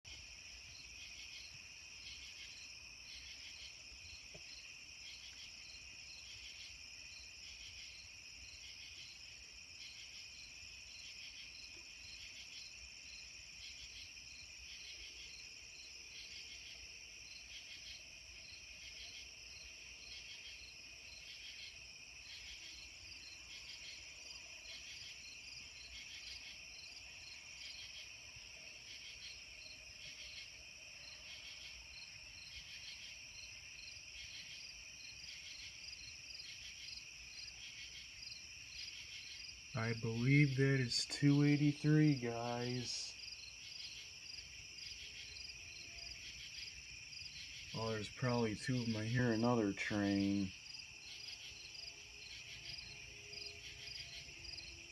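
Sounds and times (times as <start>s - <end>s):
crickets chirping: 0.1s - 54.9s
faint low steady tones: 39.8s - 43.2s.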